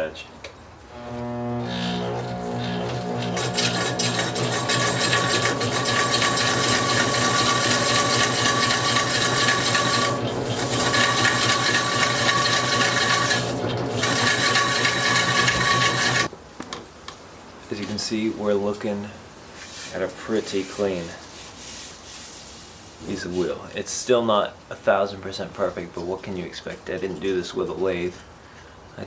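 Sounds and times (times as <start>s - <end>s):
motor humming: 0.9s - 16.3s
hand file rasping on metal: 1.7s - 16.3s.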